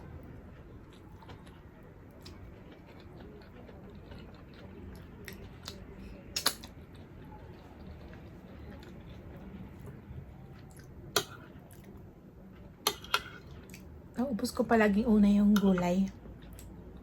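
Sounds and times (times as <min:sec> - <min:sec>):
person chewing food: 0:00.5 - 0:10.0, 0:10.6 - 0:12.0.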